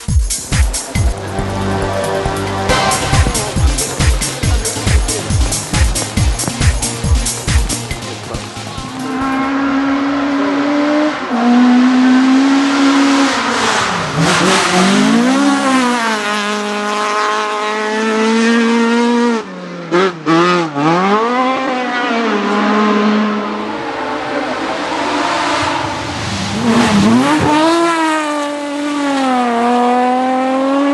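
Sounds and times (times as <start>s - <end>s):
rally car engine revving: 0.0s - 30.9s.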